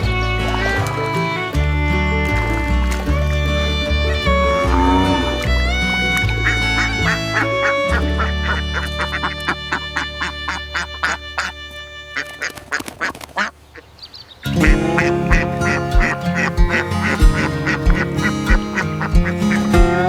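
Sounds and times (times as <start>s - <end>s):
light plucked notes: 0.0s - 13.5s, 14.4s - 20.0s
background music with steady beat: 14.6s - 20.0s.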